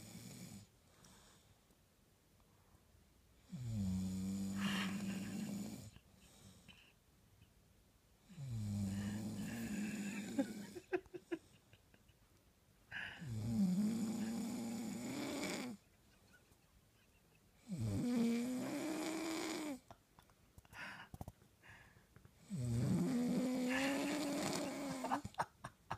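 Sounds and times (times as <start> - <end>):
long pitched snores: 0.0 - 0.7, 3.5 - 6.0, 8.3 - 10.9, 13.0 - 15.8, 17.6 - 19.8, 22.4 - 25.2.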